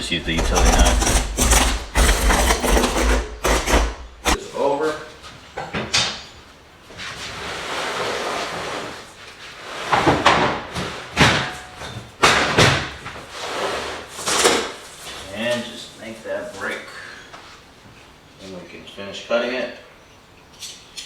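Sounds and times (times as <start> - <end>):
board knocking and scraping: 0.0 - 4.4
utility knife scoring board: 0.0 - 4.4.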